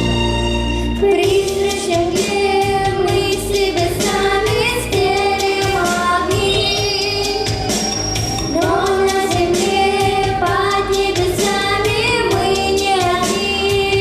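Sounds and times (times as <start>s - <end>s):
backing track with steady beat: 0.0s - 14.0s.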